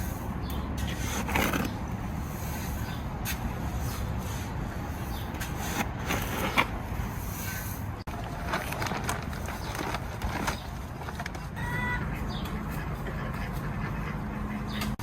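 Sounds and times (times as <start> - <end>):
poultry calling: 11.6 - 15.0.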